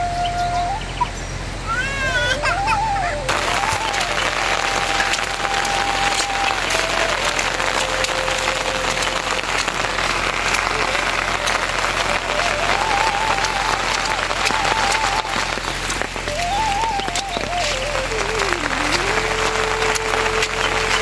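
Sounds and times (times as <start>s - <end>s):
heavy rain falling: 0.0s - 21.0s.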